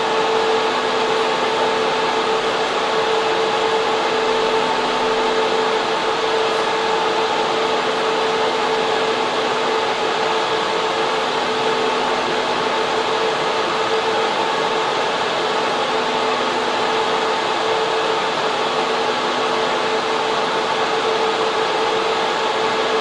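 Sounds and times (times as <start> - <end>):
server cooling fans rushing: 0.0 - 23.0
steady hum: 0.0 - 23.0.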